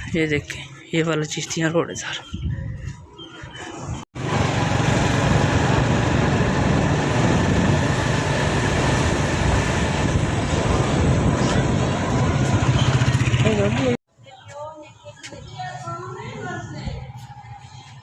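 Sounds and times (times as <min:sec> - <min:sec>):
vehicle engine and road noise: 0:03.0 - 0:14.0.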